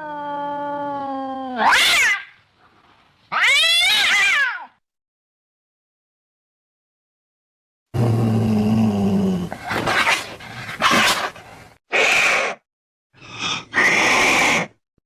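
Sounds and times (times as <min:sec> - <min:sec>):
cat harsh cries: 0:01.6 - 0:02.4, 0:03.3 - 0:04.8, 0:11.9 - 0:12.6, 0:13.8 - 0:14.8
cat growling: 0:13.3 - 0:14.8.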